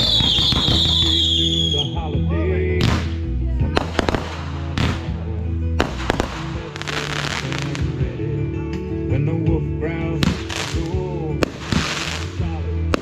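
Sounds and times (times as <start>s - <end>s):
firework bangs and cracks: 0.0s - 1.6s, 2.8s - 3.2s, 3.8s - 5.2s, 5.8s - 8.0s, 10.2s - 13.0s
firework whistle: 0.0s - 2.0s
music with bass line: 0.0s - 13.0s.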